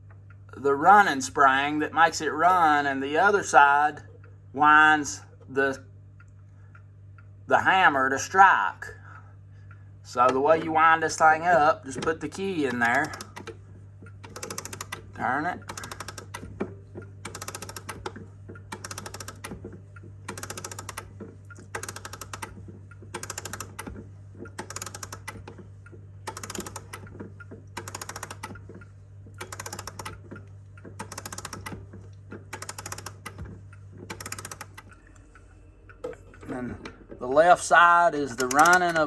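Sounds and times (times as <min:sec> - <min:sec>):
clock winding ratchet clicks: 0:12.2 - 0:13.6, 0:14.2 - 0:16.5, 0:17.2 - 0:19.6, 0:20.3 - 0:25.6, 0:26.2 - 0:28.7, 0:29.4 - 0:31.8, 0:32.5 - 0:33.4, 0:34.1 - 0:35.0, 0:38.2 - 0:39.0.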